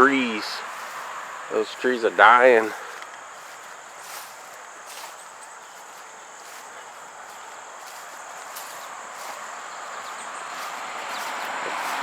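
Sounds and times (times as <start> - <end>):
faint outdoor hiss: 0.0 - 12.0
high-pitched insect trill: 3.3 - 12.0.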